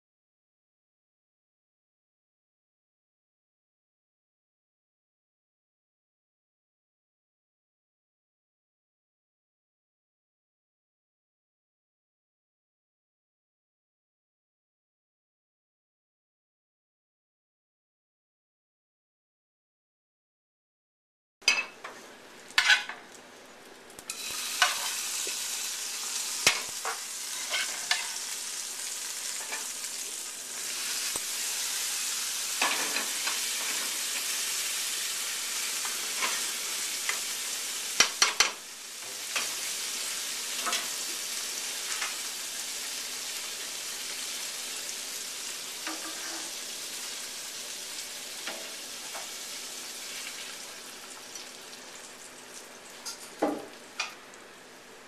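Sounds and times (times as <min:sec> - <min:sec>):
food sizzling in a frying pan: 0:21.5 - 0:55.0.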